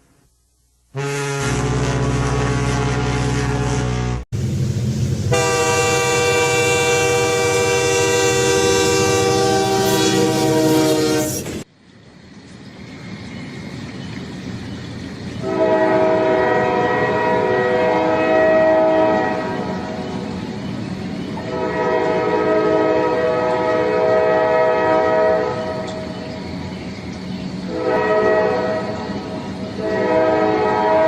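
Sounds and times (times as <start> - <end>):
moving train rumble: 0.0 - 31.0
train horn chords: 0.9 - 4.2, 5.3 - 11.5, 15.4 - 20.1, 21.4 - 26.2, 27.7 - 31.0.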